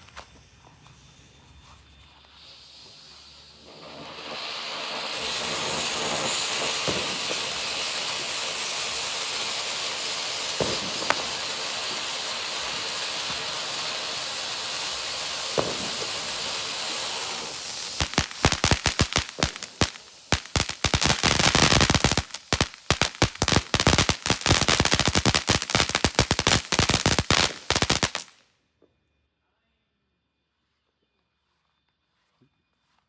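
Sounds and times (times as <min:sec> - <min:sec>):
firework crackling: 0:00.0 - 0:28.4
firework fountain hissing: 0:00.0 - 0:28.4
firework pops: 0:03.6 - 0:28.3.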